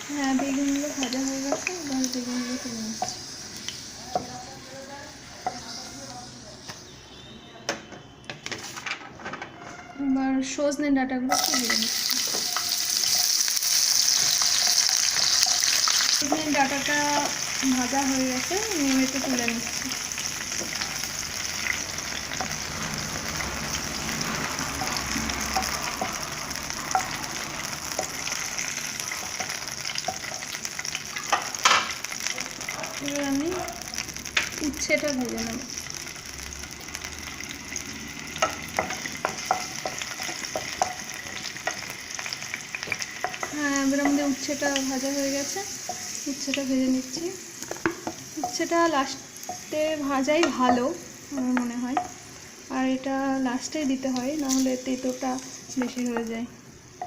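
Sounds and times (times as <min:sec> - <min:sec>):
food sizzling in hot oil: 0:00.0 - 0:07.3, 0:11.3 - 0:57.0
spatula scraping a pan: 0:11.3 - 0:16.6.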